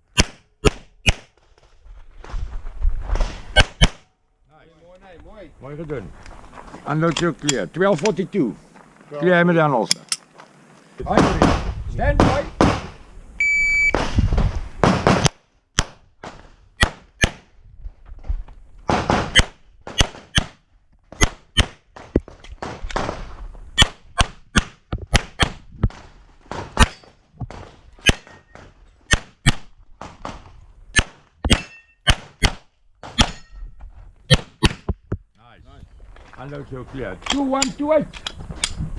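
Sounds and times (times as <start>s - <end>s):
handgun shots: 31.0s - 33.4s.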